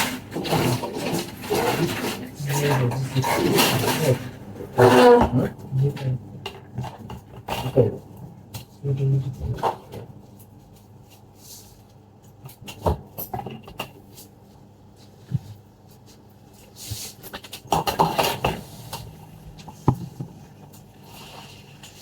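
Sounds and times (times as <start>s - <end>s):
tools clattering and scratching: 0.0s - 4.4s.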